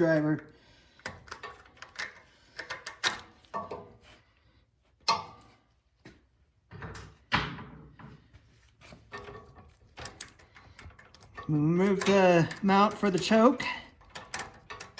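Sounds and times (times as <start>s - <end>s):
screwdriver and metal parts knocking: 1.0s - 3.9s, 9.0s - 14.9s.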